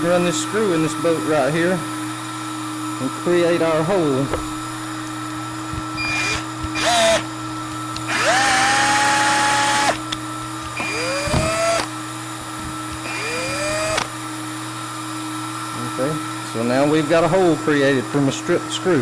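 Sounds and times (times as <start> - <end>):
cordless drill whining: 0.0 - 19.0
plastic welder humming: 0.0 - 19.0.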